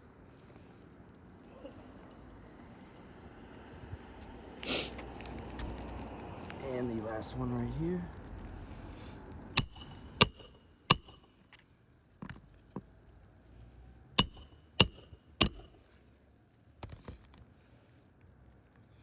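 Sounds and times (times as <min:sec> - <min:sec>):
hammer striking steel bar: 0:09.6 - 0:11.6, 0:14.2 - 0:15.8
light hammer taps: 0:09.6 - 0:11.6, 0:14.2 - 0:15.8.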